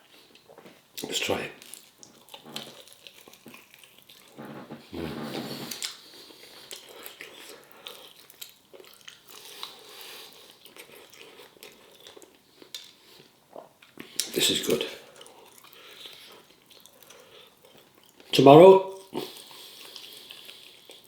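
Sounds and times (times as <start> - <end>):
crunching and chewing food: 0.0 - 18.4, 19.0 - 21.0
hum-like voice sound: 4.9 - 5.7.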